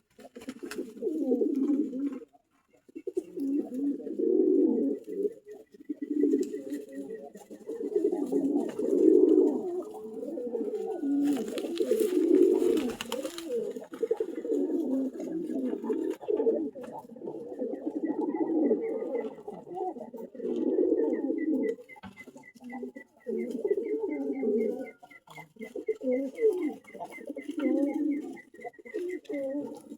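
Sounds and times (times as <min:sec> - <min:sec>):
pigeons cooing: 0:00.0 - 0:29.9
rustling: 0:04.8 - 0:17.7.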